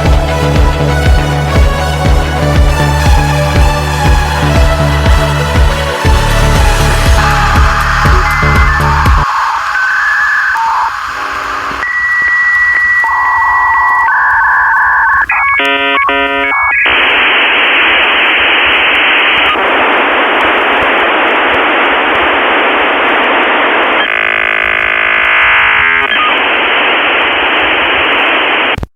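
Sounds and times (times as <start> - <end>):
buzzing tones: 4.7 - 27.2
static hiss: 6.0 - 28.9
modem switching tones: 7.0 - 28.9
dial-up modem beeping tones: 7.2 - 17.0, 23.1 - 27.5.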